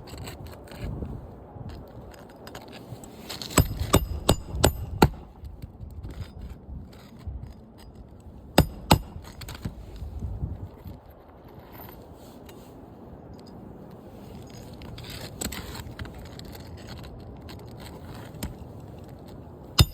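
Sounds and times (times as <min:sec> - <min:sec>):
hammer striking metal: 0:03.6 - 0:05.2, 0:08.6 - 0:09.2.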